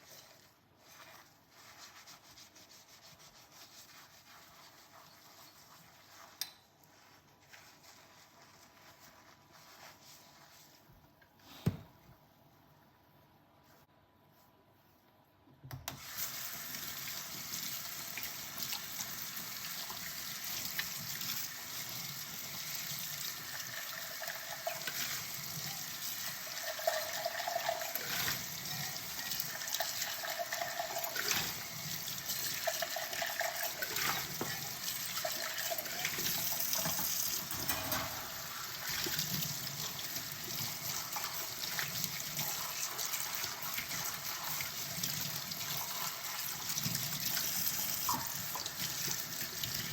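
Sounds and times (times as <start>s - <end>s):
kitchen tap running into sink: 15.9s - 49.9s.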